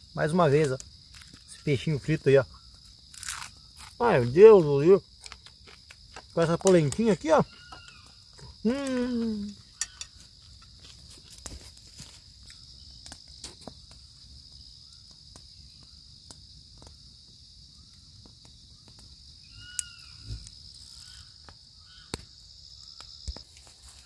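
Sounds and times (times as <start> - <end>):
insects trilling: 0.0 - 24.0
chirping calls: 7.4 - 8.2.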